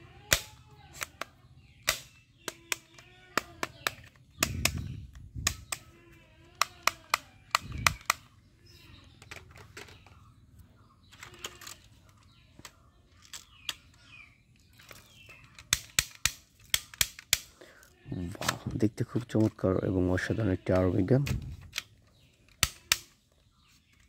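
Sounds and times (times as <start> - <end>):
plastic toy gun clicks: 0.3 - 8.3, 14.8 - 17.6, 20.7 - 23.2.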